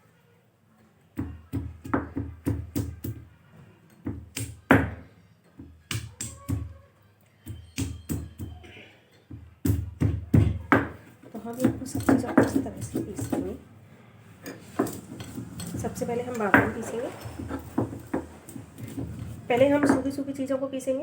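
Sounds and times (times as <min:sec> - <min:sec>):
stone pestle thudding on grinding stone: 0:14.6 - 0:20.2.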